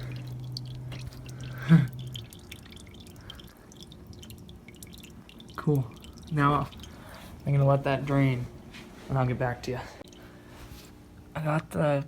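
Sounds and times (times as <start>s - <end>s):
oil draining into pan: 0.0s - 7.8s
dripping and splattering: 0.0s - 8.2s
steady low hum: 0.0s - 12.0s.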